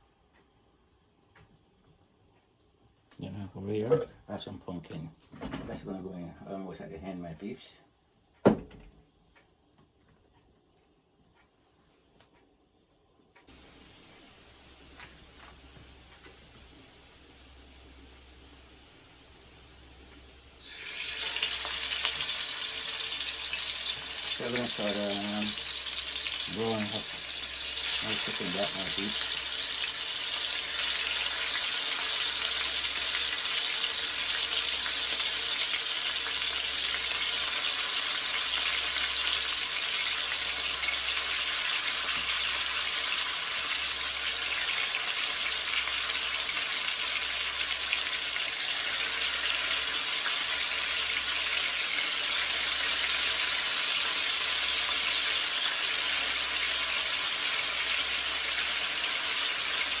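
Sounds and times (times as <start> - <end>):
chicken sizzling in hot oil: 13.5 - 60.0.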